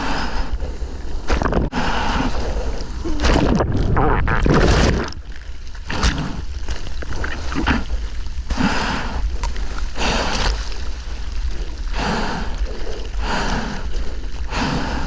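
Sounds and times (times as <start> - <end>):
low rumble of moving water: 0.0 - 15.0
water splashing around surfboard: 3.1 - 8.4.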